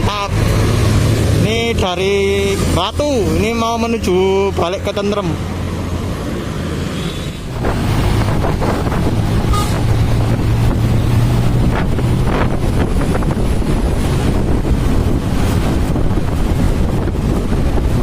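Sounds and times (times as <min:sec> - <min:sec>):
road noise: 0:00.0 - 0:18.0
vehicle engine humming: 0:00.0 - 0:18.0
wind buffeting microphone: 0:05.4 - 0:18.0.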